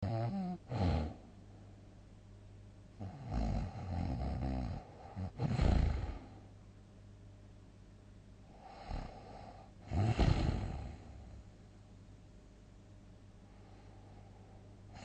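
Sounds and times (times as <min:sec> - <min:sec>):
person snoring loudly: 0:00.0 - 0:01.2, 0:03.0 - 0:06.4, 0:08.6 - 0:11.4.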